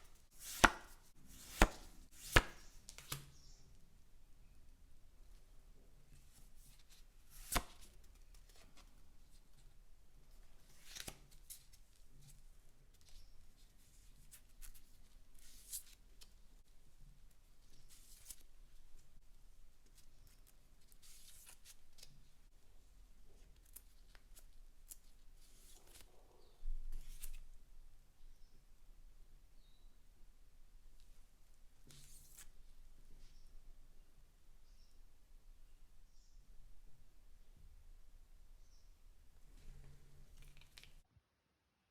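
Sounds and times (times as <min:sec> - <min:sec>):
cards rustling and scraping: 0:00.3 - 0:03.3, 0:40.3 - 0:41.0.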